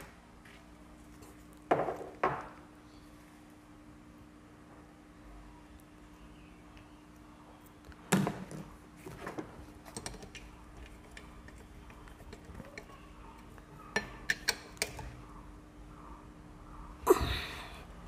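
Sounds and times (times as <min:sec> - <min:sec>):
metal tools clicking and clattering: 0:09.9 - 0:15.2.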